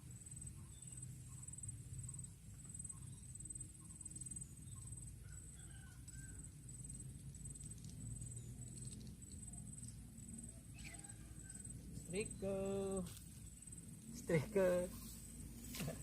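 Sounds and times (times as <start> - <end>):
insect trill: 0.0 - 16.0
low steady rumble: 0.0 - 16.0
faint bird chirps: 0.3 - 6.5, 7.8 - 13.8.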